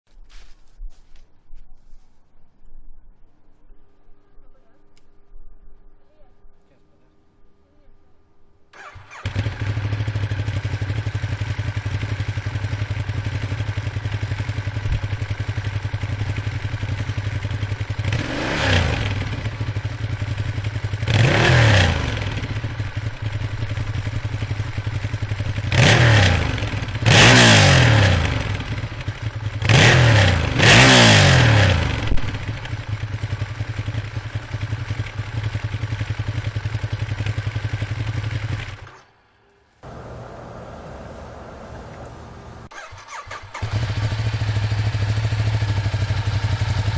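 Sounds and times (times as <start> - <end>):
motorcycle engine idling: 8.7 - 39.0, 39.8 - 46.9
engine revving: 15.9 - 20.3, 20.9 - 22.7, 25.5 - 32.8, 39.8 - 46.9.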